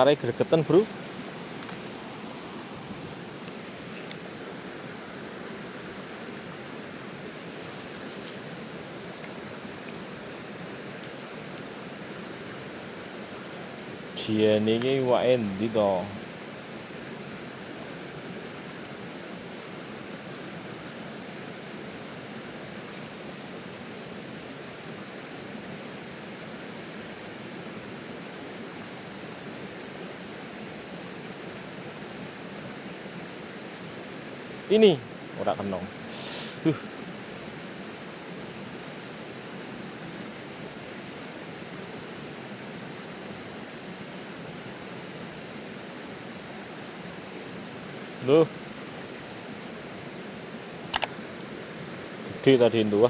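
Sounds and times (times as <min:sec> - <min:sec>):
stream water rushing over rocks: 0:00.0 - 0:53.0
short hiss: 0:36.0 - 0:36.8.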